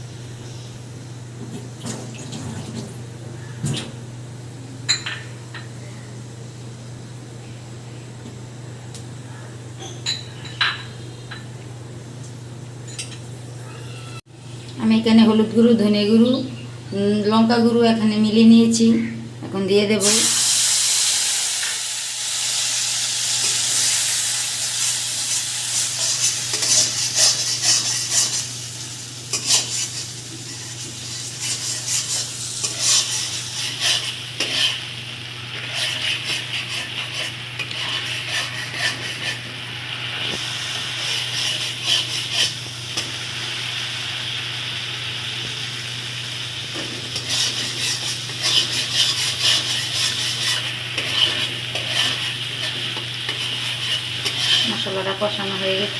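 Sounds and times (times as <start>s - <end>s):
spices sizzling in hot oil: 20.0s - 55.9s
spatula scraping pan: 29.3s - 34.9s, 35.6s - 39.6s, 41.0s - 42.6s, 46.8s - 55.0s.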